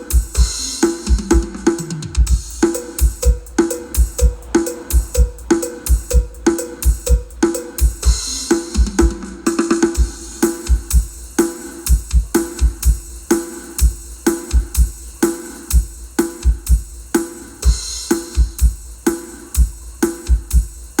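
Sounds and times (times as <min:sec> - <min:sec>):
kick drum thumps: 0:00.0 - 0:15.0, 0:15.7 - 0:17.0.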